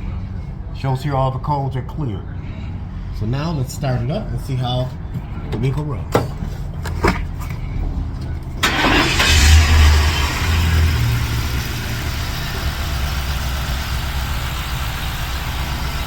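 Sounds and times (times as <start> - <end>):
car engine starting and idling: 5.1 - 16.0.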